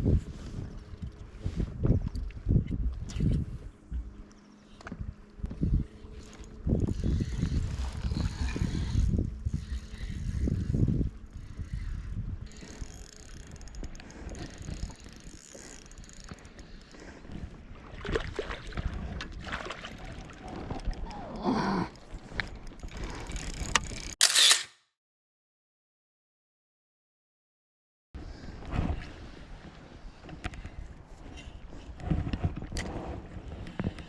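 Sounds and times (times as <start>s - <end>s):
wind noise: 0.0s - 4.1s, 4.9s - 15.0s
water: 0.1s - 23.7s, 28.2s - 34.0s
gear clicks and rattles: 6.1s - 17.5s, 22.3s - 24.7s.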